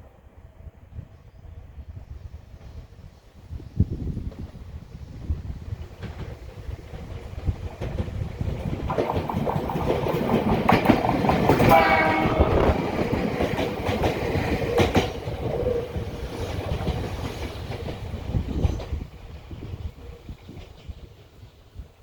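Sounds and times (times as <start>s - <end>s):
electric train passing: 0.0s - 22.0s
train wheels clicking on rails: 2.5s - 22.0s
train horn blast: 11.6s - 13.2s.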